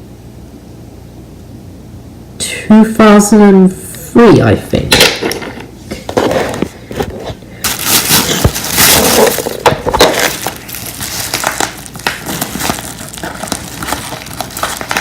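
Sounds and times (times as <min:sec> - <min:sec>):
packaging wrap crinkling and tearing: 0:07.6 - 0:15.0.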